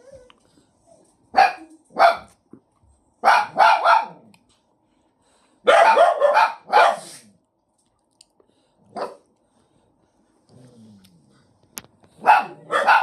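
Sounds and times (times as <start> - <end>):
dog barking: 1.3 - 2.3, 3.2 - 4.3, 5.6 - 7.2, 8.9 - 9.3, 12.2 - 13.0.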